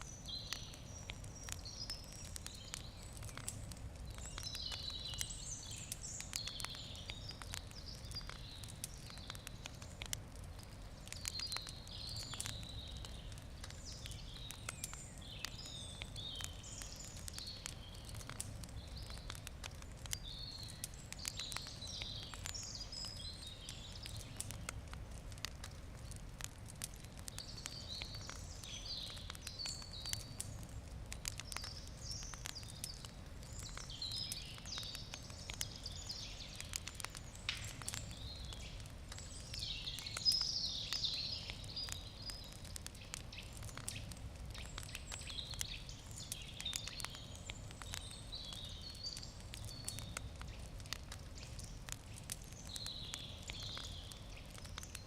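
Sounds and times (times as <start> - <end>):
birds chirping: 0.0 - 24.8, 27.2 - 55.0
campfire crackling and popping: 0.0 - 55.0.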